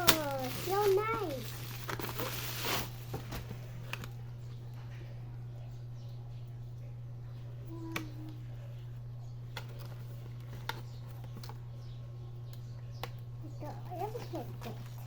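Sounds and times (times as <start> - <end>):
plastic toy packaging clicks: 0.0 - 3.3
steady low hum: 0.0 - 15.0.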